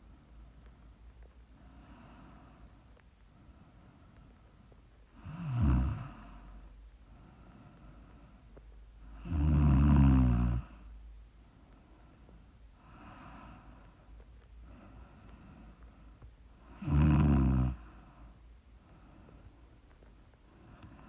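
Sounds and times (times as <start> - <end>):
quiet breathing: 0.0 - 21.0
woman snoring: 5.2 - 6.4, 9.2 - 10.7, 16.7 - 17.9.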